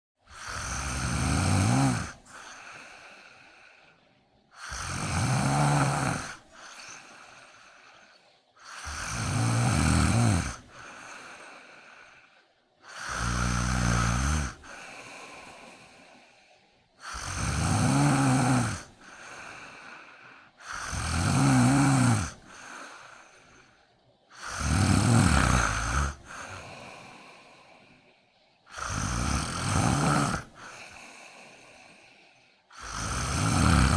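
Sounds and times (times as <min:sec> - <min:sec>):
cat snoring: 0:00.3 - 0:02.7, 0:04.6 - 0:07.0, 0:08.6 - 0:10.6, 0:12.9 - 0:15.0, 0:17.0 - 0:18.9, 0:20.6 - 0:22.8, 0:24.4 - 0:27.0, 0:28.7 - 0:30.7, 0:32.8 - 0:33.9.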